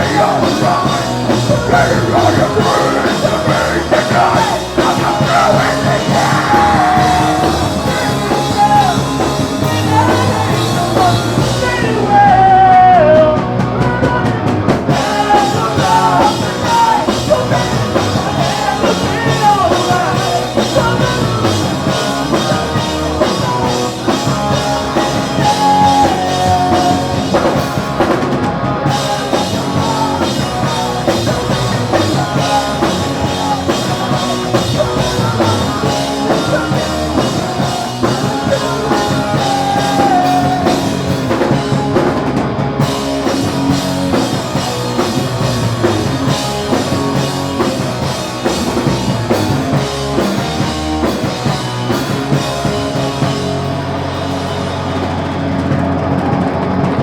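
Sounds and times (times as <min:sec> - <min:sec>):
melodic guitar line: 0:00.0 - 0:57.0
punk rock band playing live: 0:00.0 - 0:57.0.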